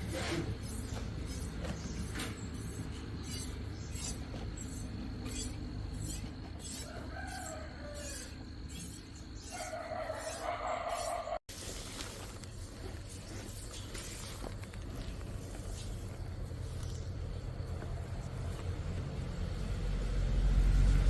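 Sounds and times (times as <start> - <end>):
rooster crowing: 6.7 - 8.7, 9.4 - 11.4.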